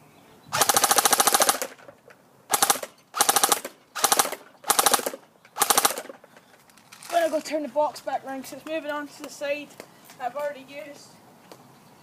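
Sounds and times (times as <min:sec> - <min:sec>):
airsoft rifle firing bursts: 0:00.6 - 0:01.8, 0:02.5 - 0:06.2.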